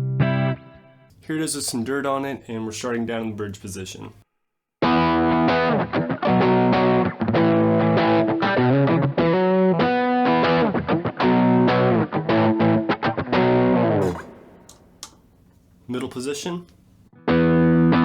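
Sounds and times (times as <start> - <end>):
distorted electric guitar: 4.8 - 15.0.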